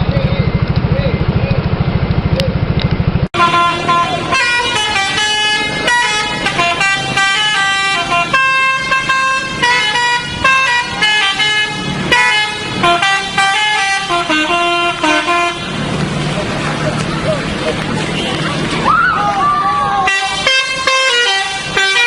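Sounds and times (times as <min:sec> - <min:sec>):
multi-tone bus air horn melody: 0:03.4 - 0:15.9, 0:20.0 - 0:22.0.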